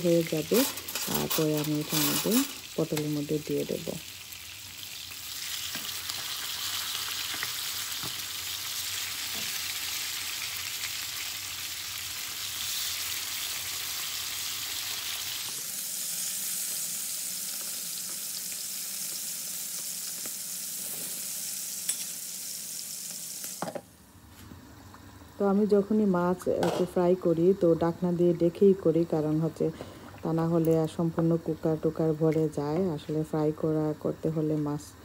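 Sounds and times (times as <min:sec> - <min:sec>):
fish sizzling in hot oil: 0:00.0 - 0:23.8.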